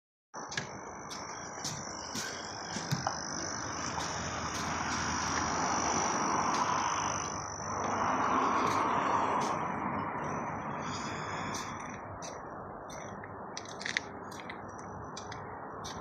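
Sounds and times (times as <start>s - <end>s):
frogs calling: 0.4s - 16.0s
high-pitched insect trill: 0.4s - 16.0s.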